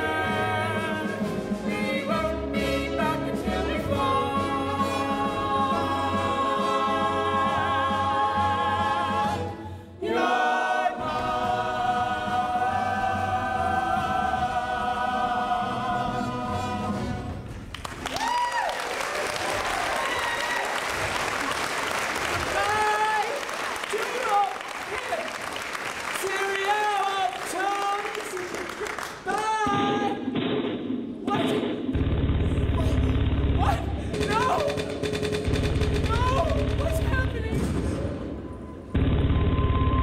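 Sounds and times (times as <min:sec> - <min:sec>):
cast singing with accompaniment: 0:00.0 - 0:17.4
audience applause: 0:17.7 - 0:29.5.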